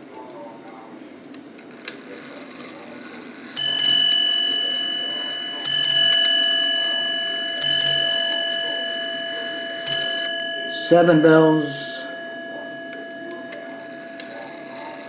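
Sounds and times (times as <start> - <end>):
clock bell double strikes: 3.6 - 15.0.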